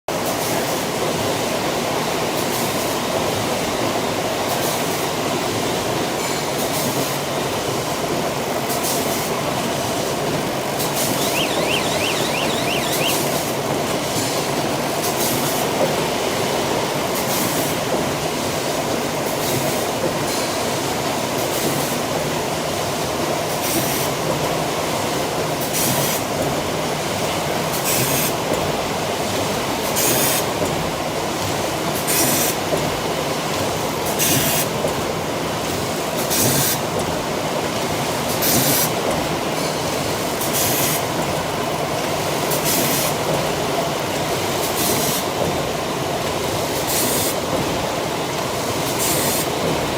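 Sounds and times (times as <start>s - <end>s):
sharp machine stroke: 11.0s - 13.2s.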